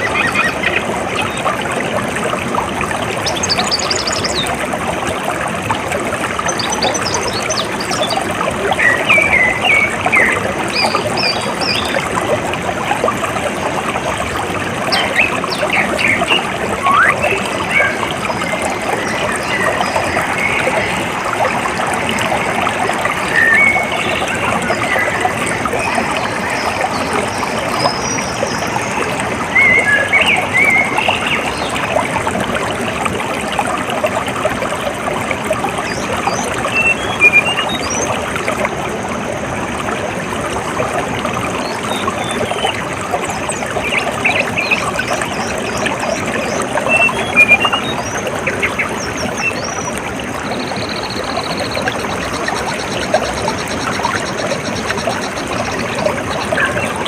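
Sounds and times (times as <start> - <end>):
water trickling and splashing: 0.0 - 57.0
small birds chirping: 14.9 - 21.2.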